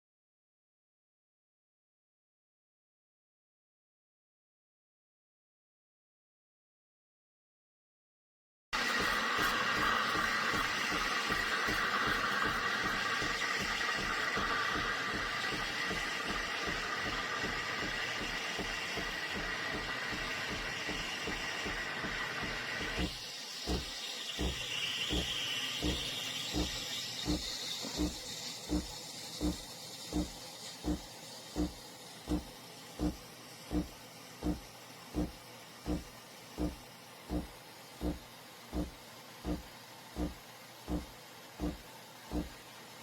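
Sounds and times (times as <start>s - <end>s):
rhythmic pump pulse: 8.8s - 42.6s
espresso machine steam hissing: 8.8s - 42.7s.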